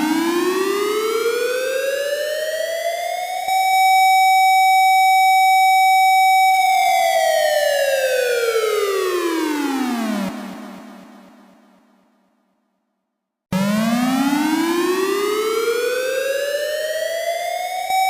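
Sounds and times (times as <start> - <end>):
fire alarm siren: 0.0 - 10.3, 13.5 - 18.0.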